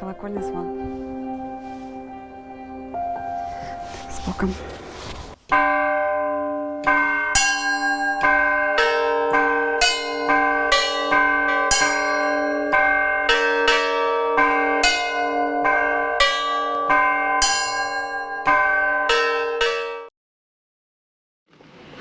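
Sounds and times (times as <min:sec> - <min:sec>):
low bell humming: 0:05.5 - 0:20.1
small church bells ringing: 0:05.5 - 0:20.1.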